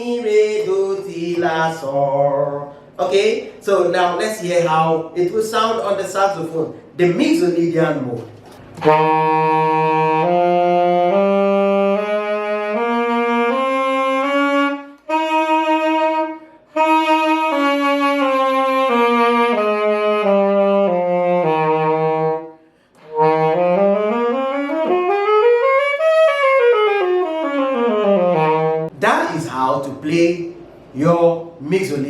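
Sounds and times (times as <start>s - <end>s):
saxophone playing a scale: 8.5s - 29.0s.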